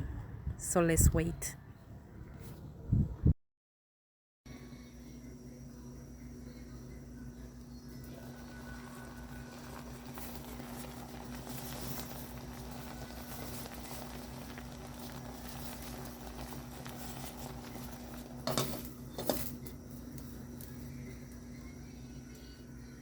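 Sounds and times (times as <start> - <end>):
pot bubbling on the boil: 7.4 - 21.6
metal clanking against pot: 18.4 - 19.6.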